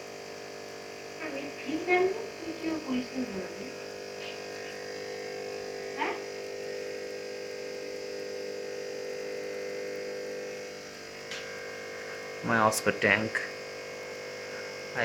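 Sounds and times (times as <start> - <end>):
aquarium filter and pump hum: 0.0 - 15.0.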